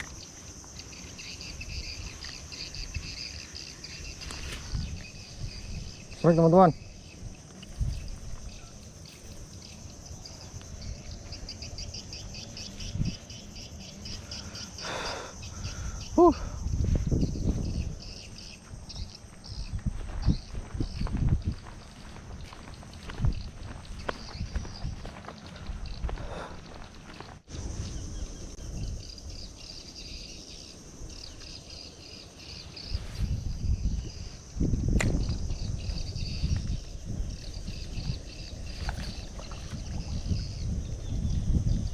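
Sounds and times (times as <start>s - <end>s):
high insect whine: 0.0s - 41.9s
insects chirping: 0.0s - 41.9s
sharp click: 34.9s - 35.4s.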